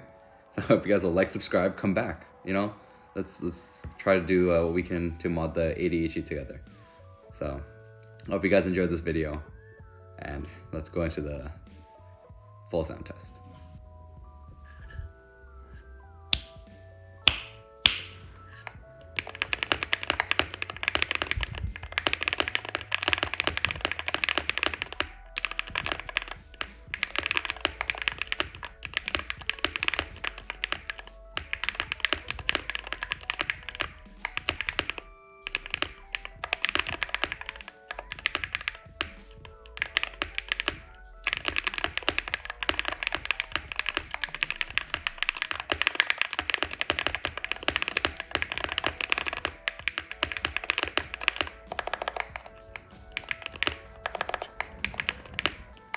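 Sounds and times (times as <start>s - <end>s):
quiet background music: 0.0s - 55.9s
clacky keyboard keystrokes: 16.3s - 16.6s, 17.3s - 55.9s.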